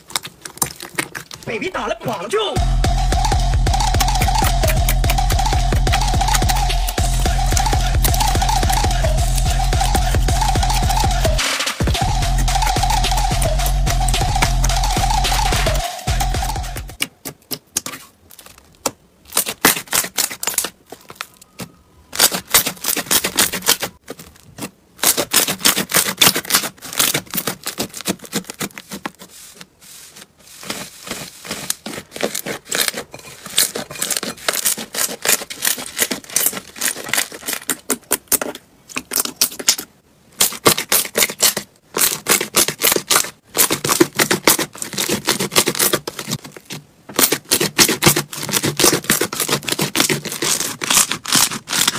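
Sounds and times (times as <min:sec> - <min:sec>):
slime crackling and popping: 0:00.0 - 0:01.5, 0:03.8 - 0:11.4, 0:16.9 - 0:29.0.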